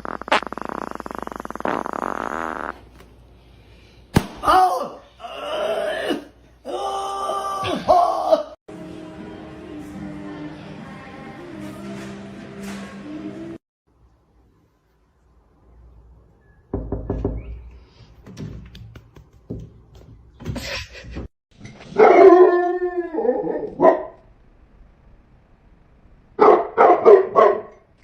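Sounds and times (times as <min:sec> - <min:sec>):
dog barking and yelping: 0:21.9 - 0:24.2, 0:26.4 - 0:27.8.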